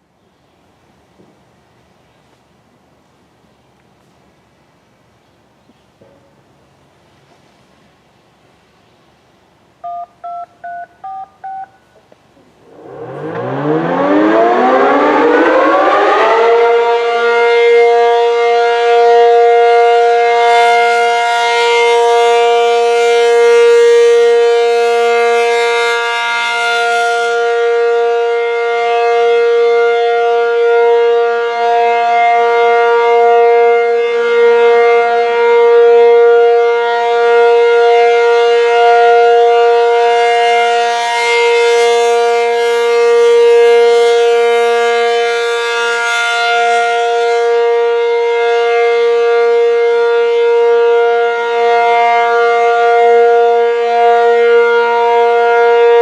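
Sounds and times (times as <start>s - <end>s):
touch-tone beeps: 9.8s - 12.0s
warning siren winding up: 12.7s - 17.5s.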